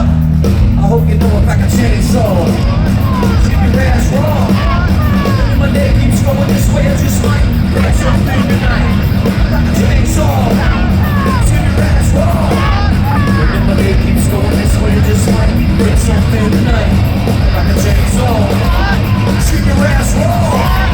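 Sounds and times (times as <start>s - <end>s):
metal band playing loudly: 0.0s - 20.9s
people shouting: 2.3s - 15.1s, 17.4s - 20.9s.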